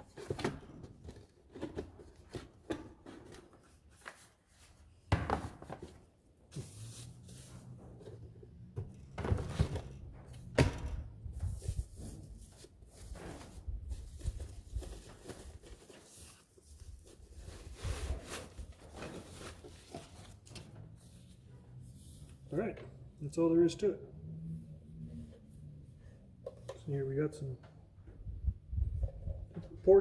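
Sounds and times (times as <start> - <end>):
packaging rustling and scraping: 11.4 - 21.4.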